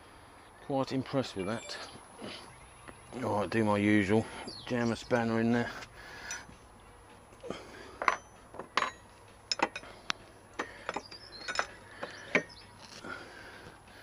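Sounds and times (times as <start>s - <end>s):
metal spanner clinking: 8.0s - 13.0s.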